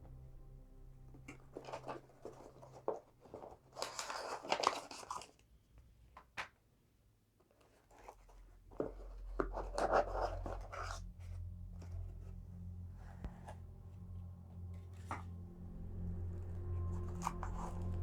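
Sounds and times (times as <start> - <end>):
steady low hum: 0.0 - 2.9, 9.6 - 18.0
packaging rustling and scraping: 1.4 - 5.4, 7.6 - 12.4.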